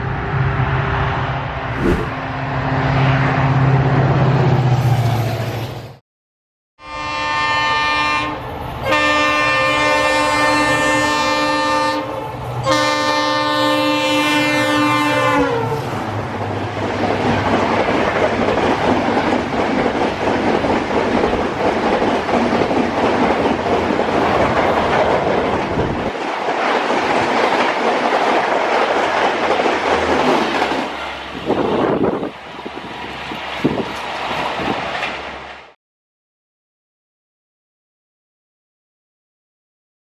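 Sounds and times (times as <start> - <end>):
multi-tone train horn blasts: 6.8 - 16.0
rush and wheel clatter of coaches: 16.8 - 35.7
diesel locomotive engine rumble: 28.9 - 35.8.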